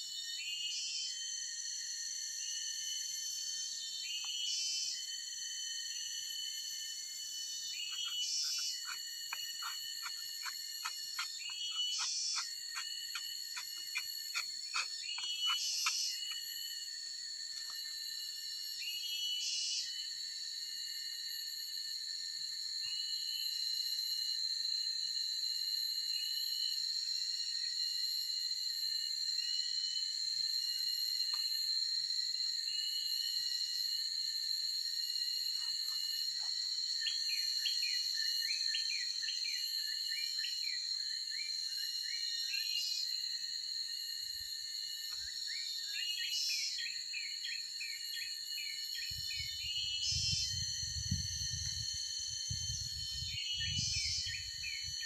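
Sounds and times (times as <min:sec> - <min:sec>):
high-pitched insect drone: 0:00.0 - 0:55.0
sharp clicking calls: 0:08.0 - 0:16.3.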